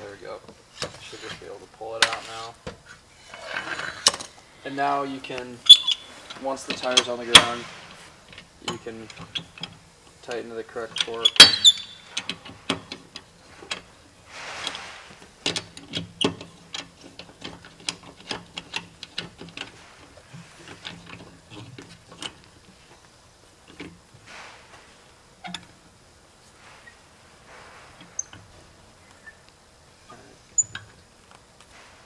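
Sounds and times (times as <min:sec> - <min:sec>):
wrench clicking on lug nuts: 0:10.9 - 0:13.9.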